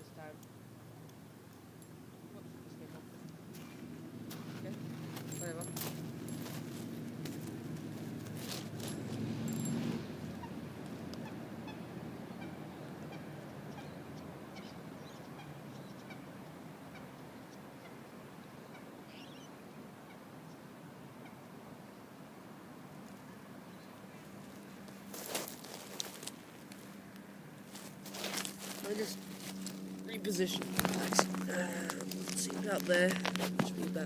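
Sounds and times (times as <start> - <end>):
outdoor background: 0.0 - 34.0
handling rustling and clicks: 5.0 - 9.8, 24.8 - 26.9, 27.8 - 34.0
faint bird calls: 11.2 - 22.0.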